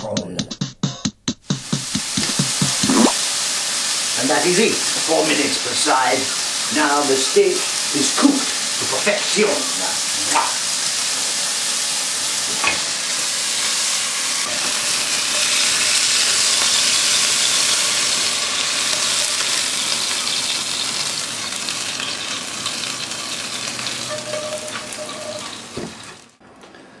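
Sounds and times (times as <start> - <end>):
steak sizzling in a frying pan: 1.8 - 26.2.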